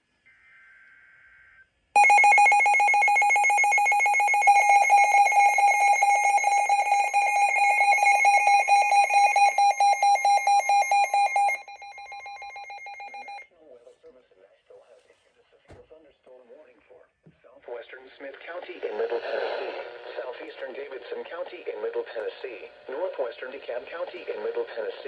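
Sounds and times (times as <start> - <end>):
pulsing electronic alarm tone: 2.0 - 13.4.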